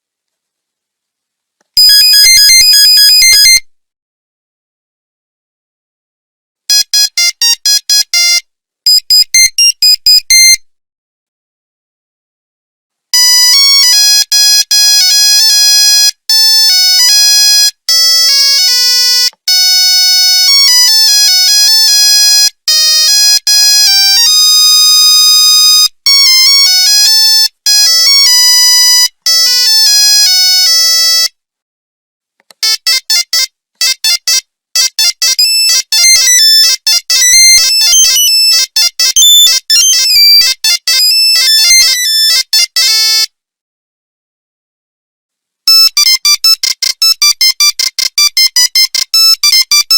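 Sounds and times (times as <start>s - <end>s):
monophonic phone ringtones: 1.8s - 3.6s, 6.7s - 10.6s, 13.2s - 31.3s, 32.6s - 43.3s, 45.7s - 49.9s.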